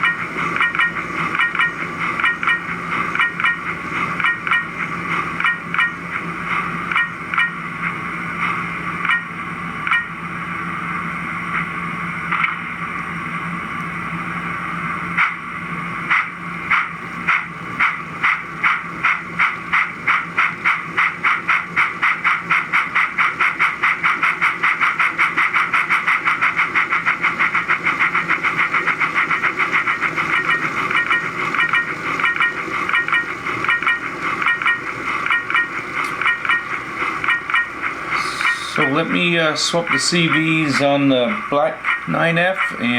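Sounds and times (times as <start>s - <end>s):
steam locomotive chuffs: 0.0s - 42.9s
steady steam hiss: 37.8s - 42.9s.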